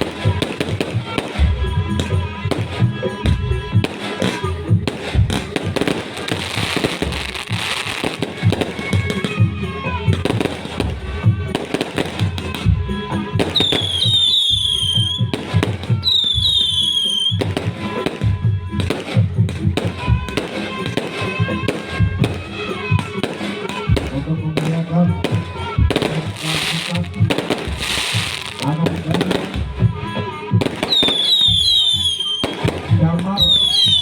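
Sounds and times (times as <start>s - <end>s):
fireworks bangs and crackles: 0.0s - 34.0s
whistling fireworks: 3.8s - 9.5s, 13.3s - 19.2s, 19.8s - 34.0s.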